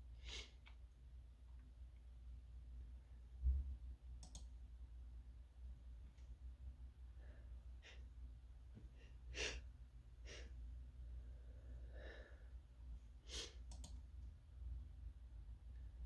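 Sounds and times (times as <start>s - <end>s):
person sneezing and sniffing: 0.2s - 0.6s, 13.3s - 13.6s.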